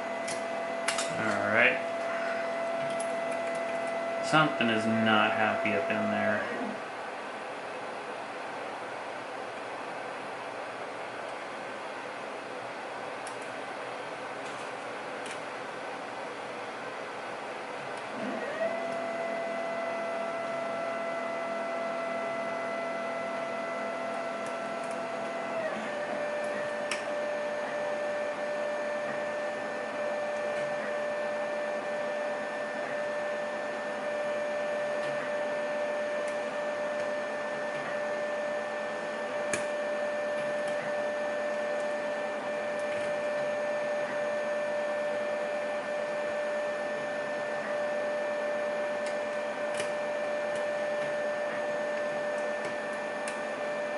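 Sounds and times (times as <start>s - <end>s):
small electric motor whine: 0.0s - 7.0s, 17.5s - 53.9s.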